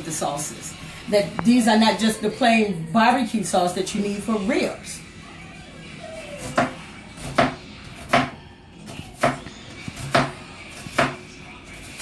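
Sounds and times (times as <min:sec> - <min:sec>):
knife chopping on cutting board: 0:06.4 - 0:11.2.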